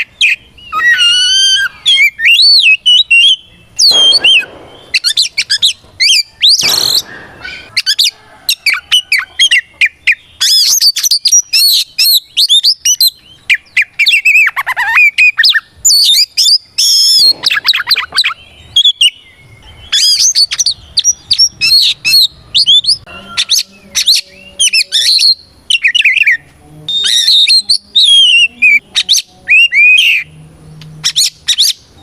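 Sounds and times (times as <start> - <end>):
bird singing whistled song: 0.0 - 32.0
harsh rasping bird notes: 0.3 - 9.3.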